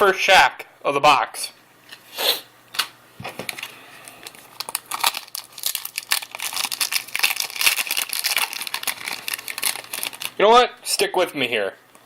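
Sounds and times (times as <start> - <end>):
wrapper crinkling: 3.4 - 10.4.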